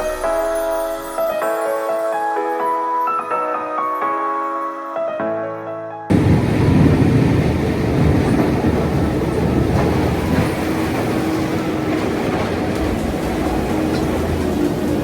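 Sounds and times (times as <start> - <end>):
loader engine rumbling and clattering: 6.1 - 15.0.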